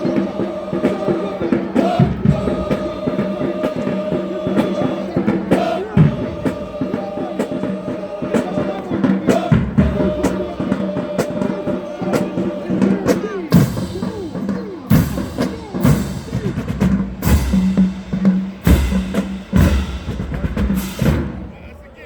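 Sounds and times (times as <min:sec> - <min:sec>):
drum strikes: 0:00.0 - 0:21.9
brass chords: 0:00.0 - 0:22.0
marching band playing: 0:00.0 - 0:22.0.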